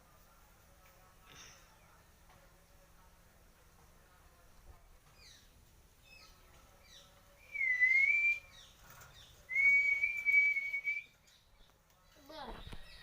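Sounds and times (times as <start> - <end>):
long clear whistles: 7.5 - 8.5, 9.5 - 11.2.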